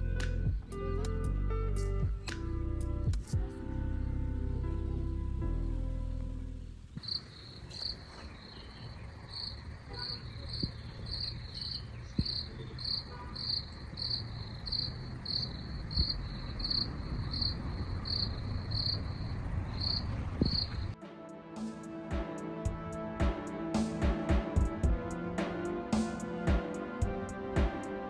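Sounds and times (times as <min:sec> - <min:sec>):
cricket chirping: 0:07.0 - 0:21.0.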